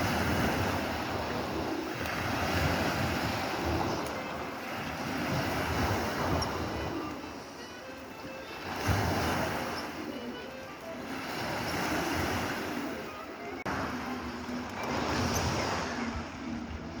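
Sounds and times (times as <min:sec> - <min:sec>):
wind buffeting microphone: 0:00.0 - 0:10.2
sea waves washing on shore: 0:00.0 - 0:17.0.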